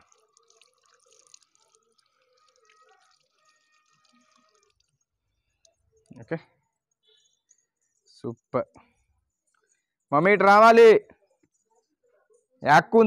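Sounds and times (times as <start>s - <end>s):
water dripping and trickling: 0.0s - 7.1s.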